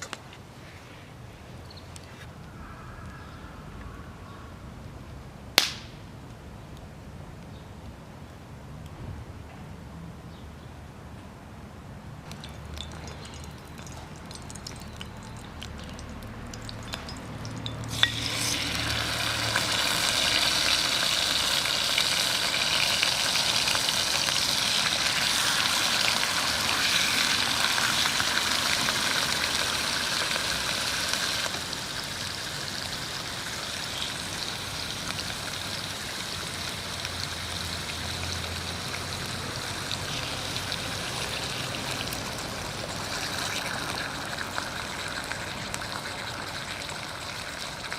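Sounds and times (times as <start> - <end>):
lamb sizzling: 12.3 - 37.0.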